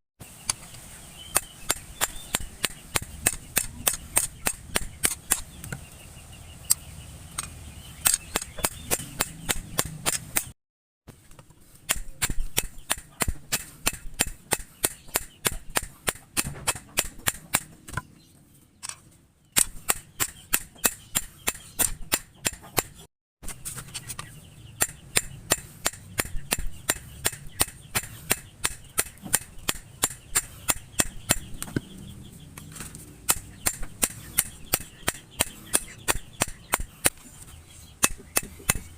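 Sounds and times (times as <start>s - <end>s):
hammer striking steel on anvil: 11.9s - 17.7s, 24.8s - 31.5s, 33.3s - 37.2s.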